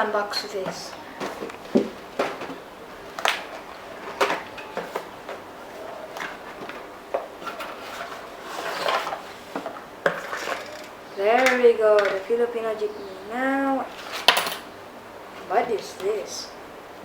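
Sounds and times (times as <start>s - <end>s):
packaging rustling scrape: 1.1s - 10.9s.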